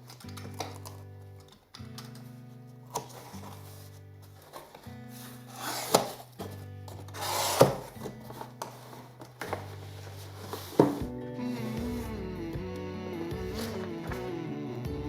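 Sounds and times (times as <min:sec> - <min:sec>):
cardboard tearing: 0:02.8 - 0:12.1
background music: 0:02.8 - 0:15.0.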